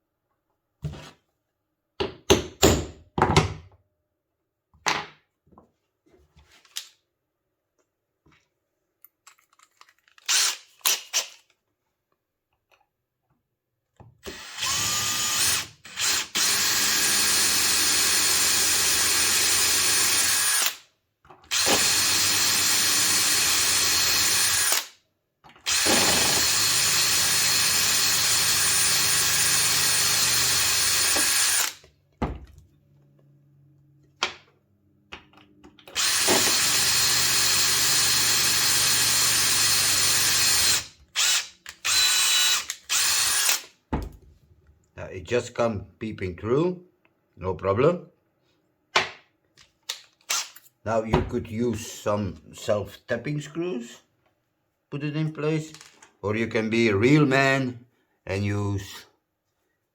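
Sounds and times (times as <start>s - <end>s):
power drill running: 10.3s - 10.6s, 14.2s - 20.8s, 21.5s - 24.9s, 25.7s - 31.8s, 36.0s - 43.7s.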